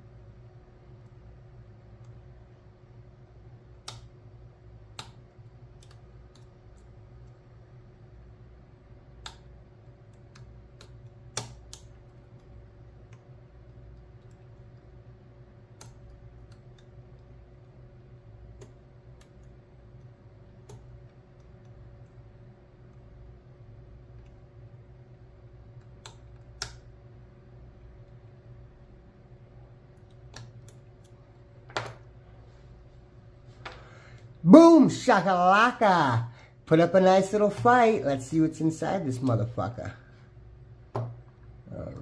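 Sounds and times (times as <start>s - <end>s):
steady low hum: 0.0s - 42.0s.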